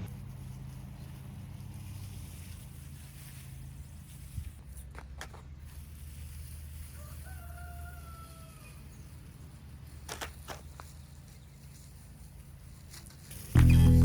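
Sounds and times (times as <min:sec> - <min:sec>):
rooster crowing: 0:06.9 - 0:08.8.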